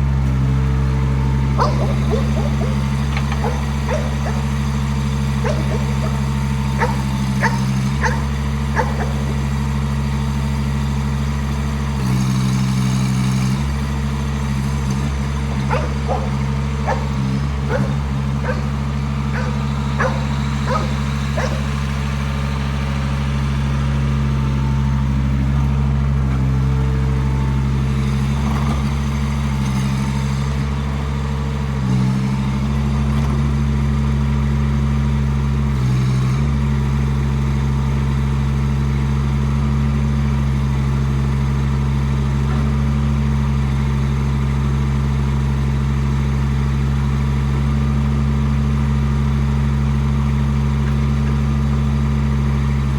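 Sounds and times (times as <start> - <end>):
mini excavator engine running: 0.0 - 52.9
short high yelps: 5.4 - 9.4.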